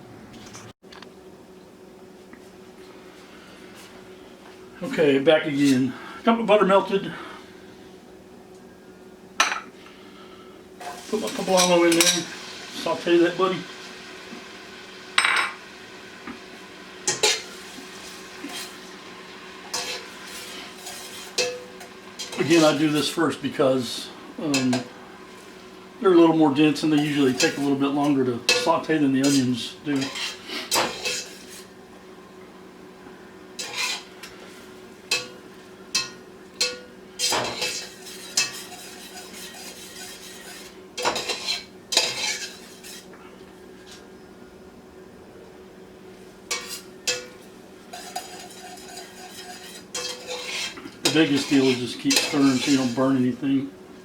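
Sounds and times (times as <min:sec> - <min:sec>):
faint sizzle: 0:01.6 - 0:54.0
utensil scraping a pot: 0:17.1 - 0:18.9, 0:19.6 - 0:23.2, 0:26.8 - 0:31.7, 0:33.6 - 0:43.2, 0:46.5 - 0:53.4.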